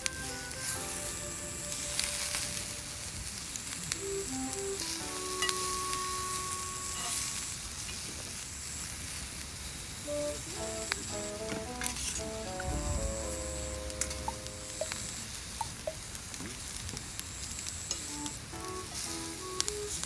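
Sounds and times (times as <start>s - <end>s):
soft background music: 0.0s - 3.2s, 3.9s - 7.2s, 10.1s - 15.3s, 18.0s - 20.0s
fire crackling: 0.0s - 20.0s
fish sizzling over campfire: 0.0s - 20.0s.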